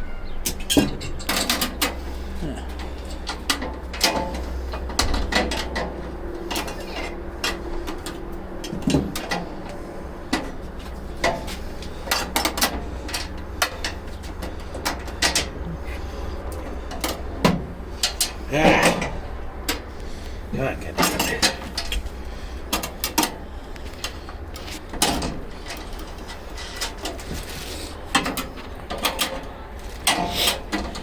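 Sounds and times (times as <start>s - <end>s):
steady low rumble: 0.0s - 31.0s
metal clinks and knocks: 0.4s - 19.9s
faint voices: 2.0s - 3.4s, 13.8s - 22.7s.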